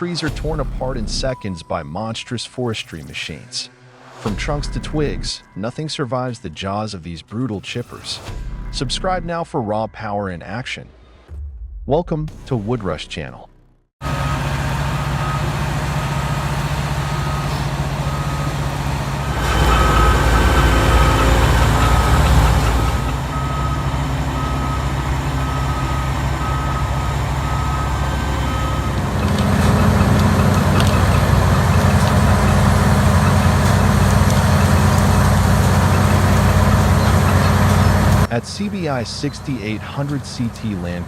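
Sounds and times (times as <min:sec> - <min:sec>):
heavy machine engine running: 0:14.0 - 0:41.0
backup alarm beeping: 0:14.1 - 0:35.0.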